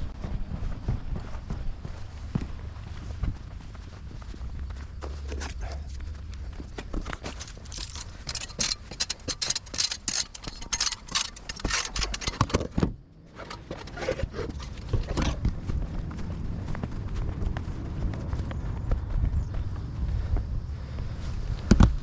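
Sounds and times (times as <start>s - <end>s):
roofing work clicks and scrapes: 6.6s - 15.5s.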